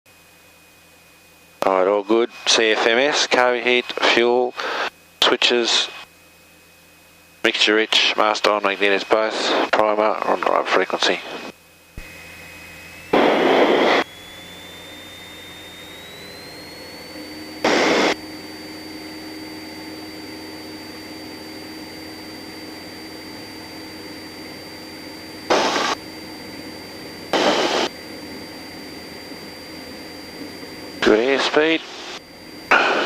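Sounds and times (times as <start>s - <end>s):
light aircraft engine: 0.1s - 33.0s.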